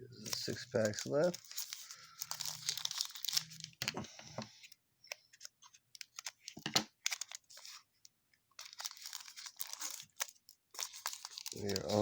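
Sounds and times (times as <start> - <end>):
wrapper tearing and crinkling: 0.3 - 3.8, 8.6 - 12.0.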